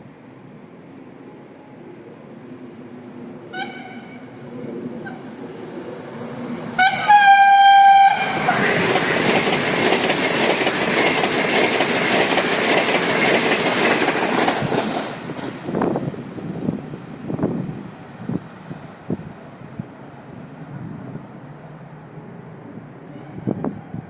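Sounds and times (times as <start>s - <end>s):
train rushing past: 0.0s - 24.0s
train horn blast: 3.5s - 4.3s, 6.8s - 8.6s.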